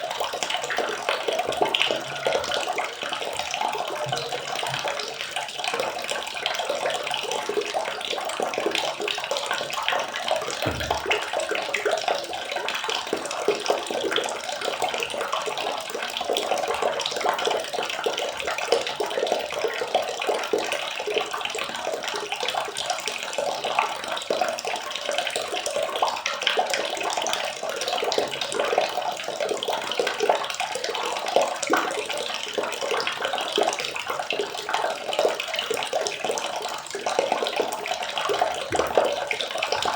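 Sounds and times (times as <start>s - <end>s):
water running and splashing: 0.0s - 11.8s, 31.5s - 39.9s.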